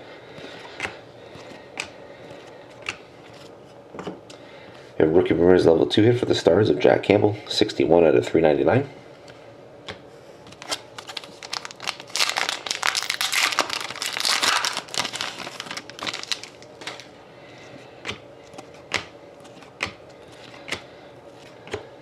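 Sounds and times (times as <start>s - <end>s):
foil wrapper crinkling and tearing: 10.6s - 17.1s.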